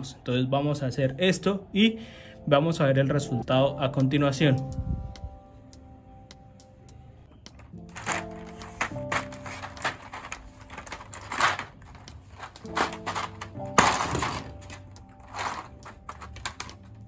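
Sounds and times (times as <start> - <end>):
background music with held notes: 0.0 - 17.0
plastic keycaps clattering: 7.5 - 17.0.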